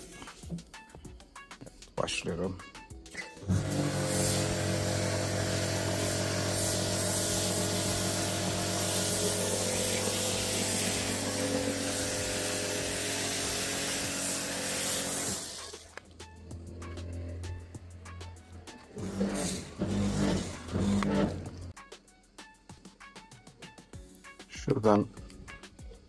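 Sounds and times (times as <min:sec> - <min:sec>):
pressure washer motor hum: 0:03.4 - 0:21.7
foam spray hissing: 0:03.5 - 0:15.9.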